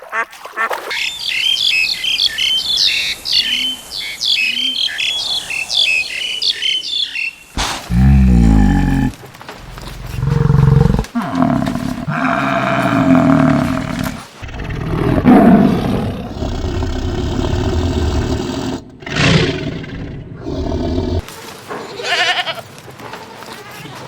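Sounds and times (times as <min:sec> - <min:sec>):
big cat roaring: 0:07.6 - 0:21.3.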